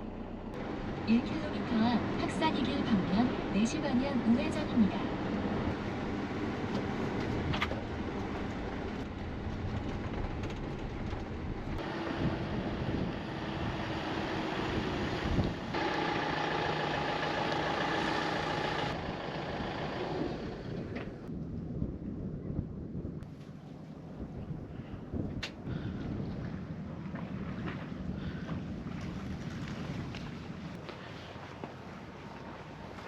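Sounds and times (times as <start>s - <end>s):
van engine: 0.0s - 3.6s, 4.7s - 21.3s
road noise: 0.0s - 21.3s
wind: 0.0s - 33.0s.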